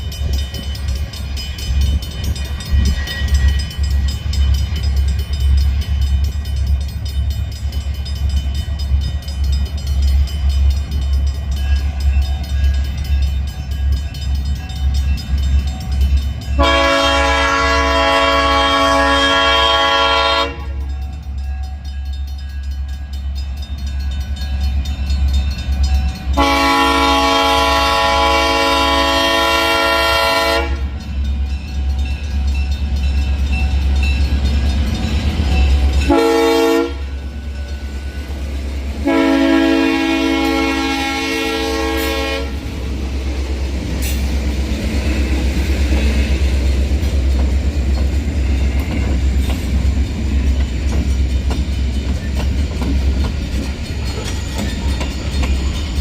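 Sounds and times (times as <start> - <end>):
diesel locomotive engines rumbling: 0.0 - 56.0
locomotive air horn chord: 16.6 - 20.8, 26.4 - 31.0, 36.0 - 37.1, 39.0 - 42.7.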